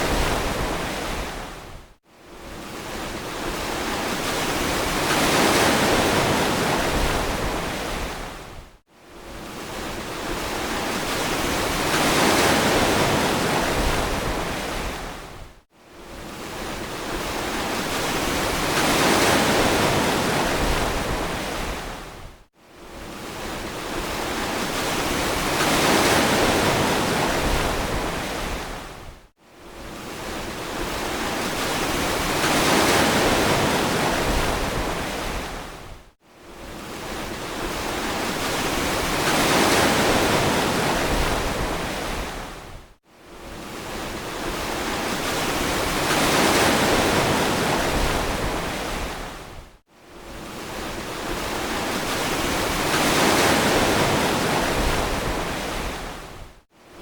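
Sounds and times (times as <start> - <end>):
ocean waves breaking: 16.4 - 22.1, 30.0 - 35.8, 36.8 - 42.6, 43.6 - 49.4, 50.4 - 56.3.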